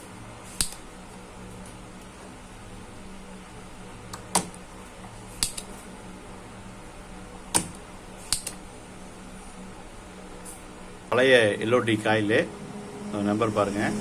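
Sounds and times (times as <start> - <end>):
faint steady hum: 0.0 - 14.0
tools clicking and tapping: 5.4 - 5.7, 7.5 - 8.6.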